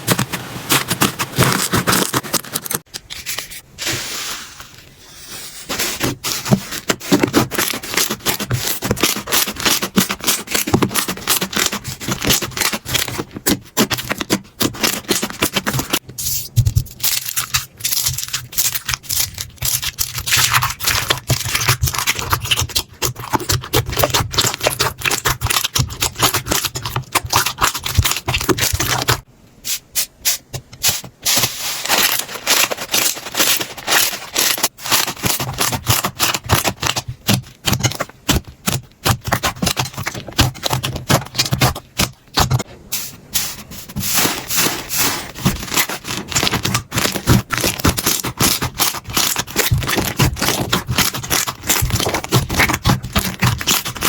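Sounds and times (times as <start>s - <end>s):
slime crackling and popping: 16.9s - 29.2s, 45.5s - 54.0s.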